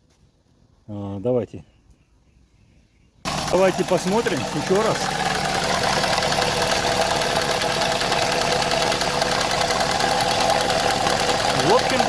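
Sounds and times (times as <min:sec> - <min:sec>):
car engine idling: 0:03.3 - 0:12.0
rapid valvetrain ticking: 0:03.3 - 0:12.0.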